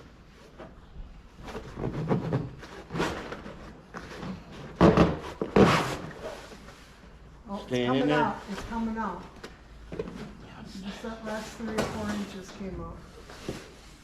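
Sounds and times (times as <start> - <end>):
canvas rubbing and scraping: 1.6 - 7.0.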